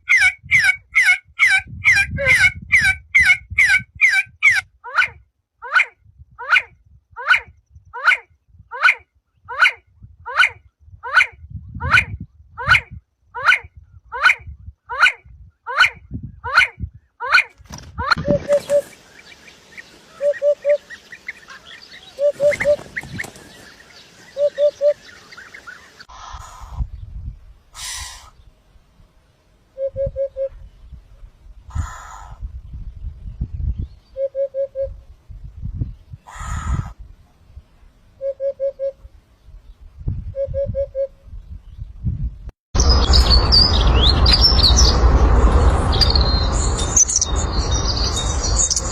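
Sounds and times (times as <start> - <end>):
birds chirping: 18.1 - 28.7, 42.8 - 48.9.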